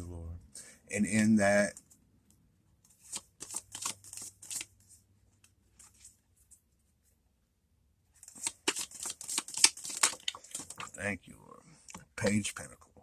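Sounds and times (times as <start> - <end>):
cards being shuffled: 2.8 - 4.9, 8.2 - 11.0.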